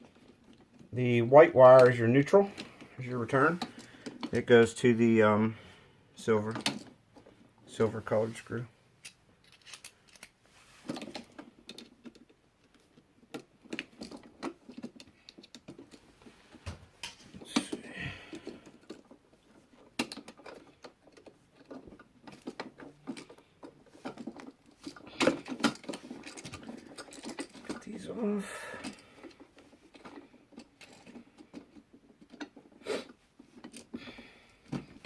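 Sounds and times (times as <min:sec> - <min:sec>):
hands clicking and scraping wall outlet: 0:09.0 - 0:28.0
rustling scrape: 0:10.4 - 0:11.3.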